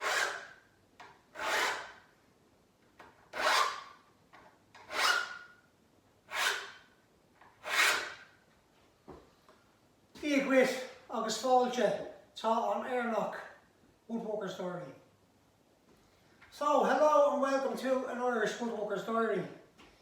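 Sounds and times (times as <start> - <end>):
file rasping across saw teeth: 0.0 - 0.6, 1.4 - 2.0, 3.4 - 3.9, 4.8 - 5.5, 6.3 - 6.8, 7.6 - 8.3.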